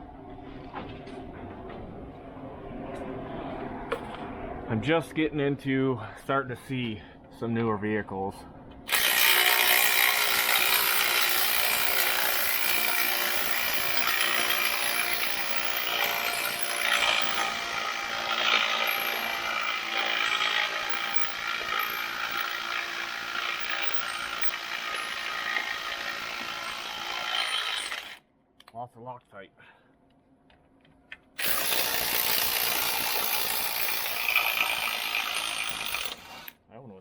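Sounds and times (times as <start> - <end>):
power tool running: 8.9 - 28.2, 31.4 - 36.5.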